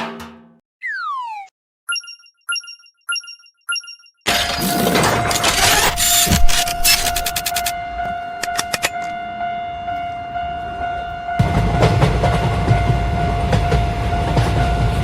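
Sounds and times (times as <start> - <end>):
steady high tone: 0.8 - 9.8
rapid wheel clicks: 5.2 - 7.7
sharp clicks: 5.4 - 7.7, 8.4 - 9.1
train passing rumble: 7.7 - 15.0.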